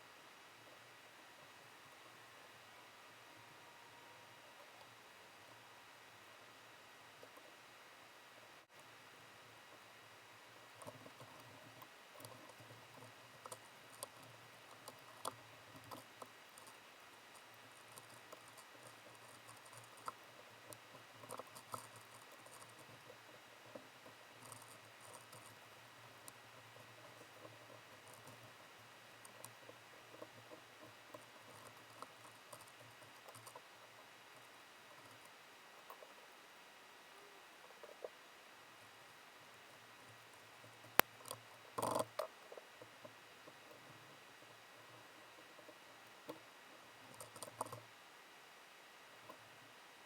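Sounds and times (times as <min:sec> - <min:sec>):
low steady hum: 0:00.0 - 0:50.0
faint light clicks and taps: 0:10.6 - 0:36.2, 0:38.8 - 0:47.9.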